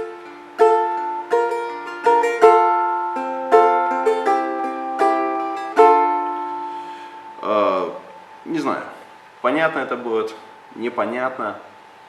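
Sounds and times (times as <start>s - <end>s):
balalaika chords strummed: 0.0s - 9.2s.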